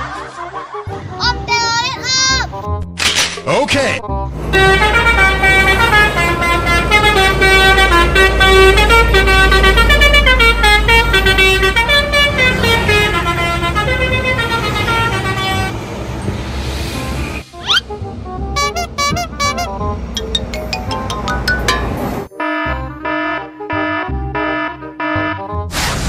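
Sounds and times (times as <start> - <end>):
multi-tone bus horn melody: 4.0 - 16.1, 17.1 - 25.7.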